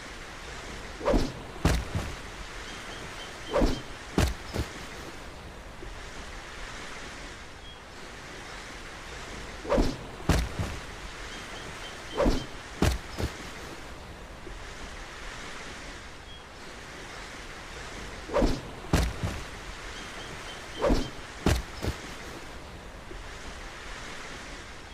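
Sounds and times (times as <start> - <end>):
knife swishing through air: 1.0 - 2.2, 3.4 - 5.2, 9.6 - 10.9, 12.1 - 13.8, 18.3 - 19.5, 20.7 - 22.5.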